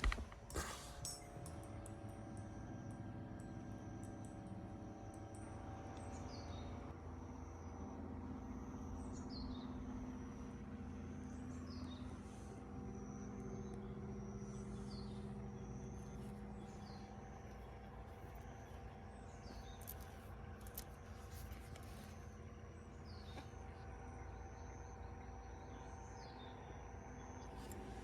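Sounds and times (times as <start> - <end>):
low steady hum: 0.0 - 28.0.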